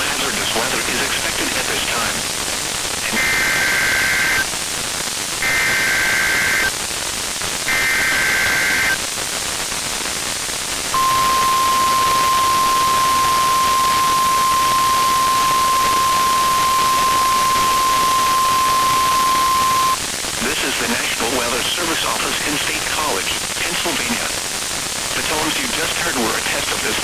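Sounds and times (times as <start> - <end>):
radio static: 0.0 - 6.8, 7.6 - 9.1, 11.0 - 27.0
buzzing digital data bursts: 3.0 - 4.6, 5.4 - 6.7, 7.7 - 9.0, 11.0 - 20.0
steady warning alarm tone: 3.1 - 4.4, 5.4 - 6.7, 7.7 - 9.0, 11.0 - 20.0.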